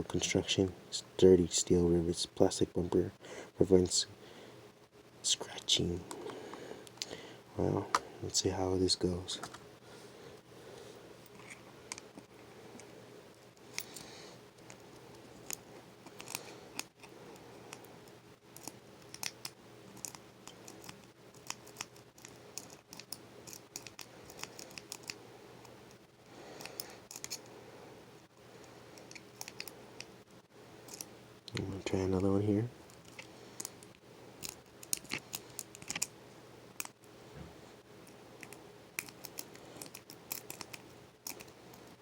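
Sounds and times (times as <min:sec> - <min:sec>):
lock pick clicking and scraping: 0:38.4 - 0:41.6.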